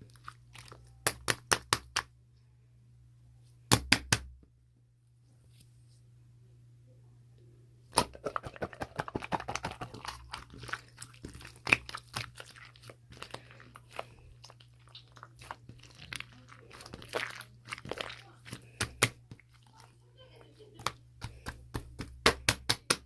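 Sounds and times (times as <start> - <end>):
crunching and chewing of crisp food: 0.0 - 1.6, 8.0 - 22.5.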